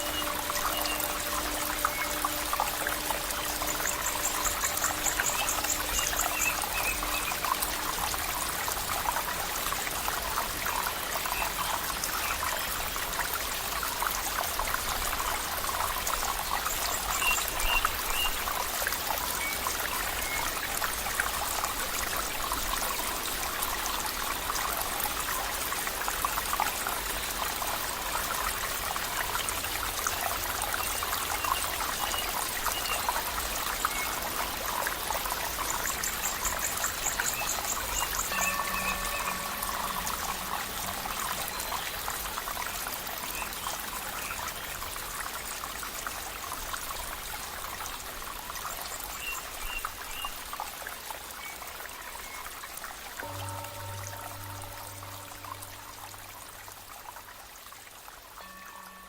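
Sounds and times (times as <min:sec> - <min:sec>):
stream water babbling: 0:00.0 - 0:59.0
faint high chirps: 0:35.9 - 0:41.9.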